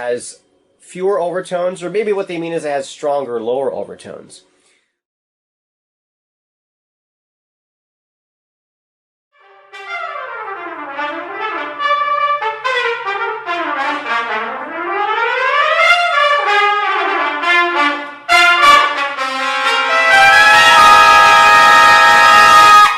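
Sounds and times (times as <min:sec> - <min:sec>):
loud sustained brassy sound: 0:09.4 - 0:22.9
trumpet playing running passages: 0:09.4 - 0:22.9.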